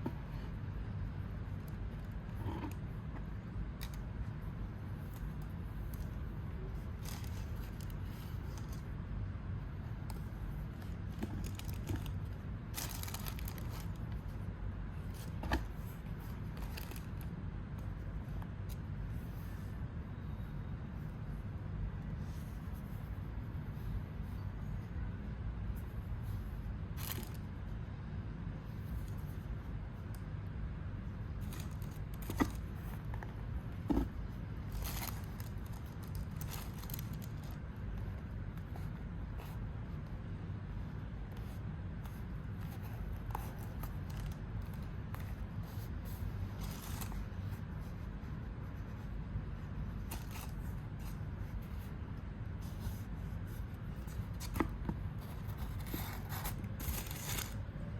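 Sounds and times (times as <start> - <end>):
steady low hum: 0.0 - 57.9
box wrapping rustling and crinkling: 6.8 - 8.8, 11.0 - 14.2, 15.1 - 17.3, 27.0 - 27.4, 31.4 - 33.2, 33.8 - 37.6, 43.5 - 44.8, 45.8 - 47.3, 50.0 - 51.2, 54.0 - 57.6.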